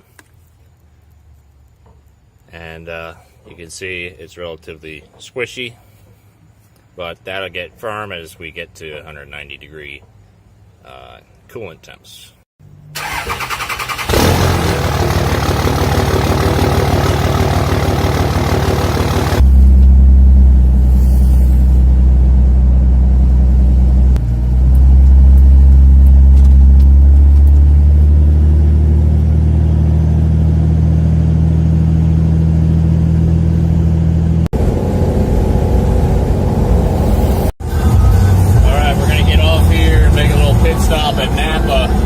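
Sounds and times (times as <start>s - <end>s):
engine drone: 12.9s - 42.0s
diesel engine idling: 13.0s - 42.0s.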